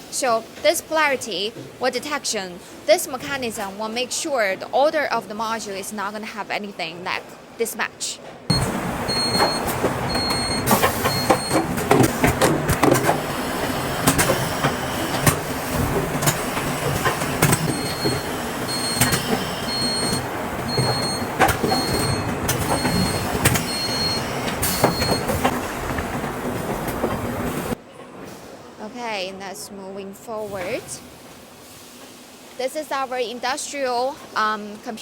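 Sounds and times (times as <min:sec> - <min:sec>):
high electronic beep: 0:08.5 - 0:11.6, 0:17.6 - 0:25.3
assembly line machinery running: 0:08.5 - 0:27.8
machine clacks and knocks: 0:08.5 - 0:27.8.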